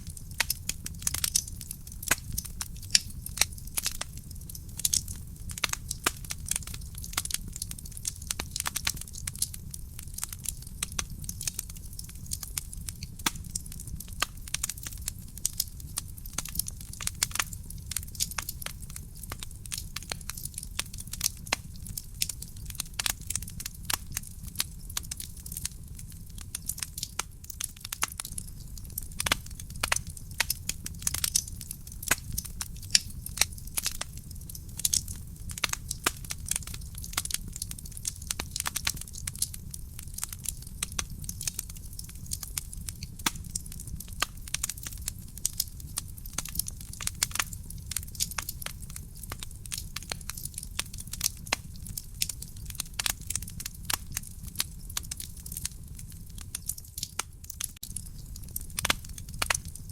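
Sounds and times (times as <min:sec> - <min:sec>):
firewood crackling and popping: 0:00.0 - 0:59.9.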